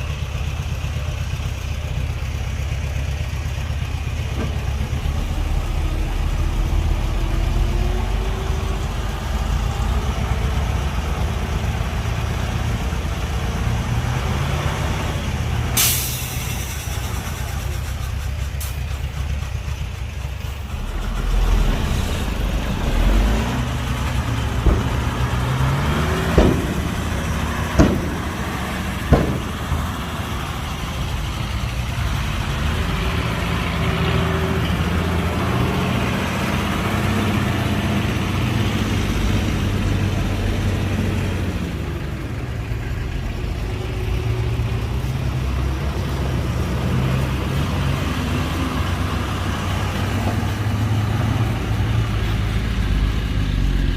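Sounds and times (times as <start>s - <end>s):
diesel machinery engine revving: 0.0s - 53.9s
sharp metallic clanks: 15.8s - 19.8s, 23.0s - 30.7s.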